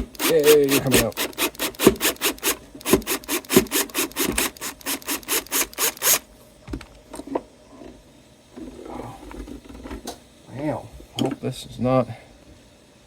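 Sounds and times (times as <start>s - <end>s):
screwdriver screw squeaking: 0.0s - 6.2s.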